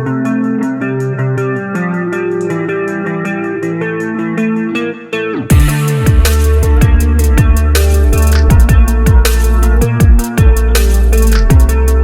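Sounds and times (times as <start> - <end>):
electronic dance music: 5.5 - 12.0.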